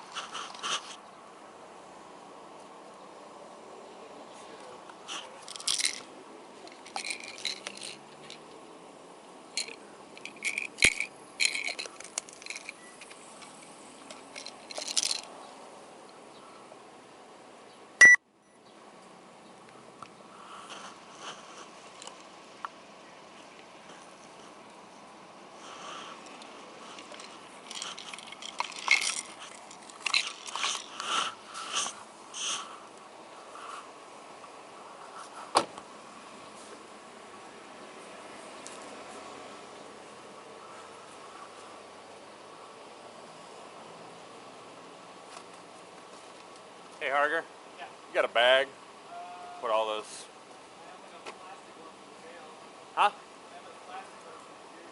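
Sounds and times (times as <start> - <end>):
crinkly rustling: 5.1 - 8.4, 9.6 - 15.3, 25.6 - 32.8
small hard objects clinking: 5.4 - 6.1, 6.7 - 8.4, 9.6 - 15.3, 25.8 - 32.5
light knocks of objects: 35.2 - 35.9.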